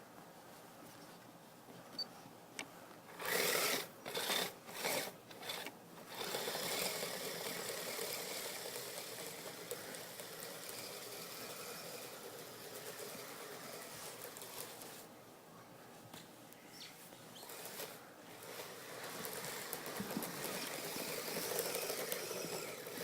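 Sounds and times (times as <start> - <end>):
toy vehicle electric motor and track: 3.1 - 15.1, 17.4 - 23.0.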